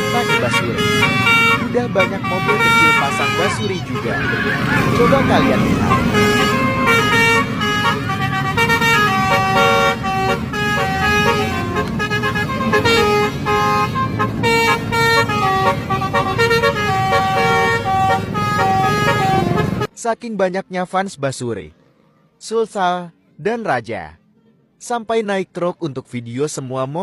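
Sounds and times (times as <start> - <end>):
musical horn playing a tune: 0.0 - 19.9
low rumble of vehicle traffic: 0.0 - 20.0.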